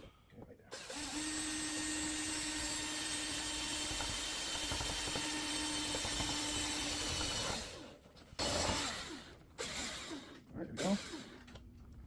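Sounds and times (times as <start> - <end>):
electric drill driving a screw: 0.7 - 11.6.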